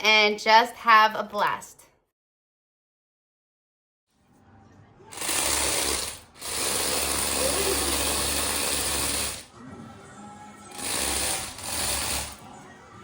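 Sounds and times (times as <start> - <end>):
small electric motors and plastic gears: 5.1 - 9.5, 10.7 - 12.4.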